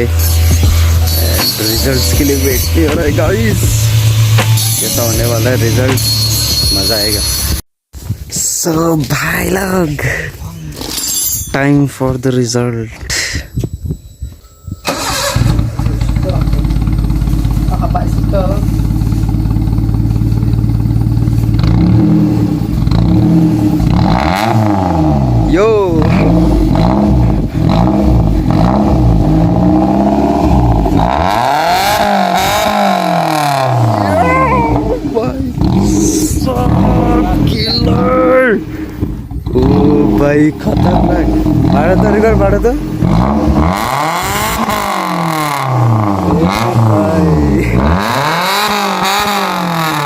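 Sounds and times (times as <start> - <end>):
car engine revving loudly: 14.9 - 50.0.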